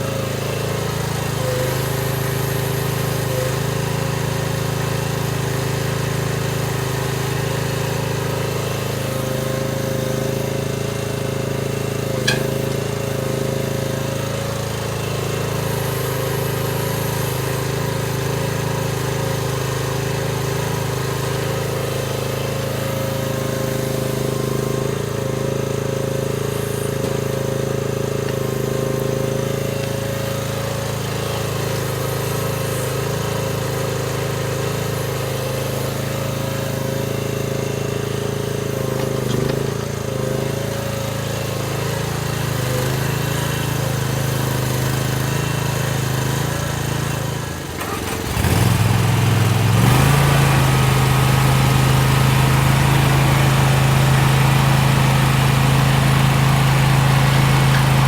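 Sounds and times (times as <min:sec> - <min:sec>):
excavator engine running under load: 0:00.0 - 0:58.0.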